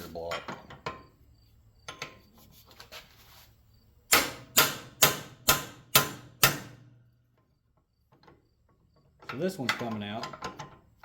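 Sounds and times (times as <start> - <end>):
hammer striking steel punch: 4.1 - 6.9.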